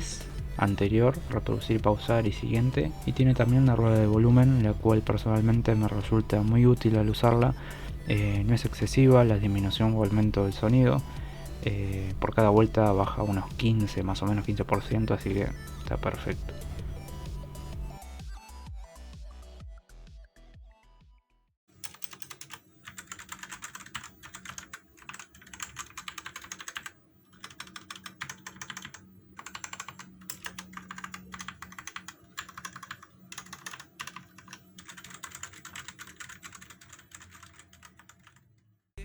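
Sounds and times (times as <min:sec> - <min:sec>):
mechanical keyboard typing: 0:21.8 - 0:38.4.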